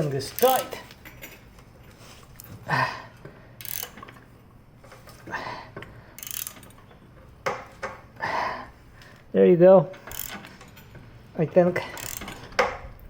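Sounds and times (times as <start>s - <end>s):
wrench turning press clicking: 0.4s - 1.3s, 3.6s - 4.2s, 6.2s - 6.8s, 10.0s - 10.8s, 11.9s - 12.8s.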